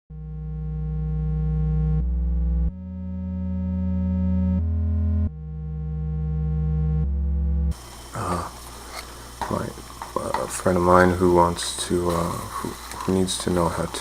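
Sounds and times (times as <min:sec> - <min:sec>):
synthesizer chords over deep bass: 0:00.1 - 0:08.3.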